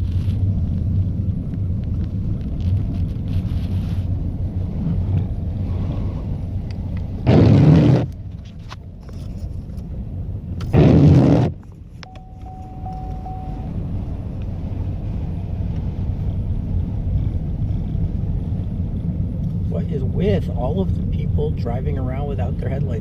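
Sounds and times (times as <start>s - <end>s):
car engine and tyres rumbling: 0.0s - 23.0s
brief thin steady tone: 12.0s - 13.8s.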